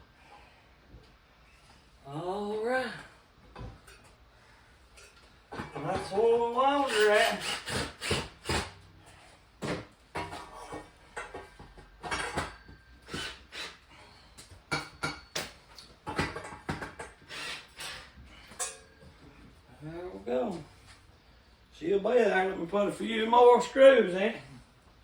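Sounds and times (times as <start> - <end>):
tools and screws clinking: 10.2 - 13.4, 18.4 - 19.1.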